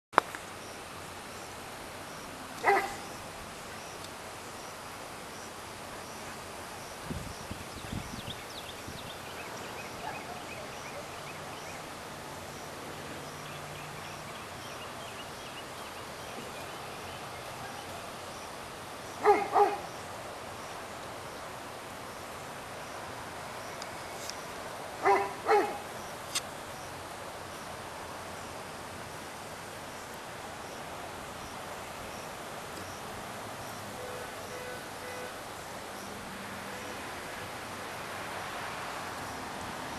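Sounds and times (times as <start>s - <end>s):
background hiss: 0.2s - 39.9s
dog barking: 2.6s - 3.1s, 10.0s - 10.5s, 19.2s - 19.9s, 25.0s - 25.9s.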